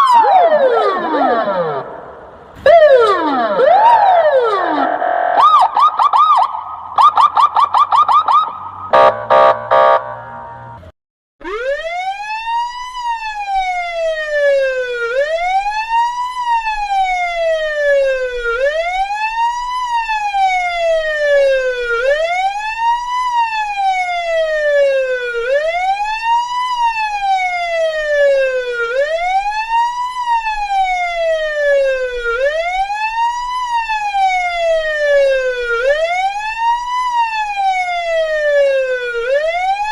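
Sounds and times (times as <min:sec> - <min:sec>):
police siren chirping yelp: 0:00.0 - 0:10.4, 0:11.4 - 0:39.9
police siren wail: 0:00.0 - 0:10.8, 0:11.4 - 0:39.9
harsh buzzing siren quacks: 0:00.6 - 0:06.6, 0:08.0 - 0:10.9.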